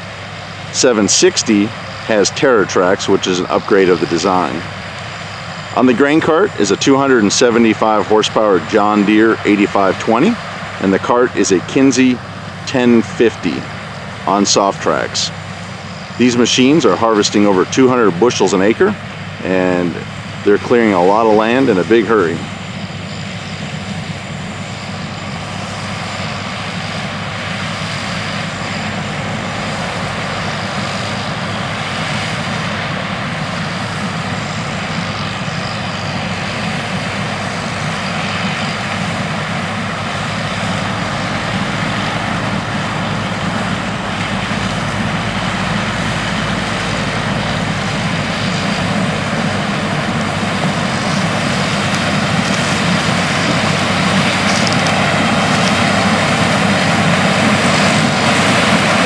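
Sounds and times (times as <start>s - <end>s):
combine harvester engine drone: 0.0s - 59.0s.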